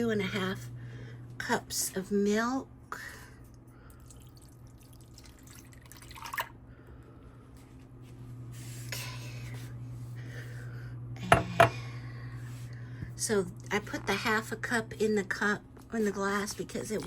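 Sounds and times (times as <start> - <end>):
milk pouring into cup: 3.9 - 6.6.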